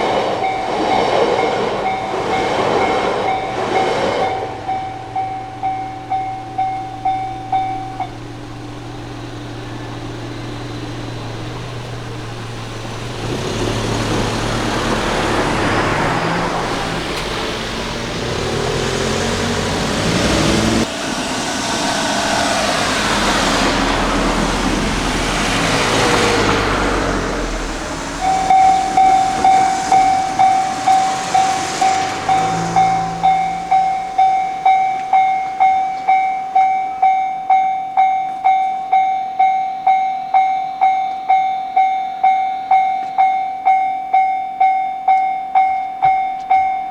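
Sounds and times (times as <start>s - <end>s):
vehicles driving past: 0.0s - 38.5s
level crossing bell ringing: 1.9s - 8.8s, 28.2s - 46.9s.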